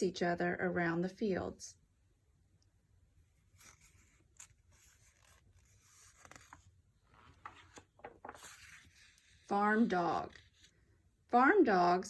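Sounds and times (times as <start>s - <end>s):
faint scraping and rustling: 3.4s - 10.9s.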